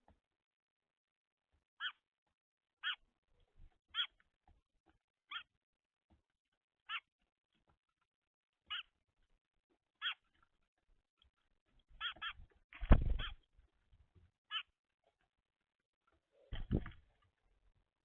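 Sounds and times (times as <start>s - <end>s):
bird chirping: 1.8s - 2.1s, 2.8s - 3.1s, 3.9s - 4.2s, 5.3s - 5.6s, 6.8s - 7.2s, 8.6s - 9.0s, 9.9s - 10.5s, 11.2s - 13.5s, 14.4s - 14.8s.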